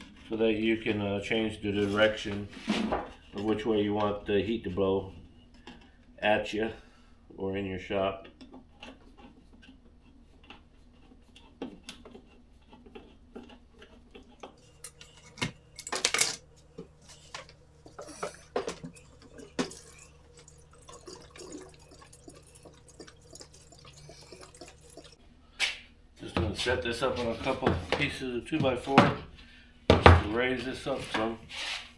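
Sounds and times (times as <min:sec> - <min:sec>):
metal parts clinking and tapping: 0:14.4 - 0:20.0
faint steady hum: 0:14.4 - 0:25.2.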